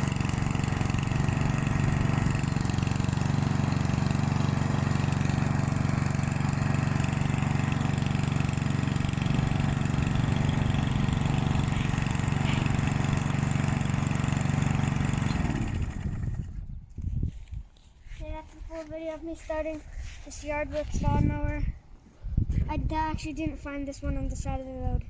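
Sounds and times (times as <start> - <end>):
lawn mower engine running: 0.0 - 16.8.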